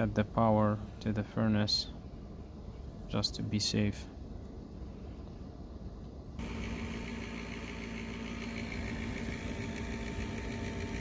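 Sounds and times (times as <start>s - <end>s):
furnace motor hum: 4.4s - 11.0s.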